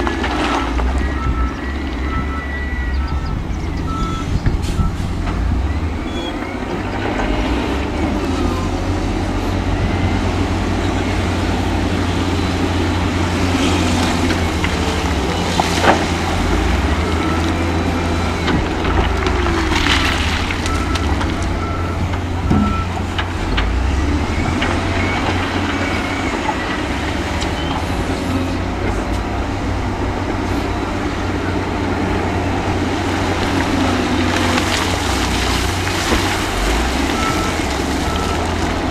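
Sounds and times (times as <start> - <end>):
diesel machinery engine rumble: 0.0 - 38.9
reversing beeps: 0.4 - 6.8, 9.6 - 11.4, 16.6 - 23.0, 23.8 - 28.1, 37.0 - 38.6.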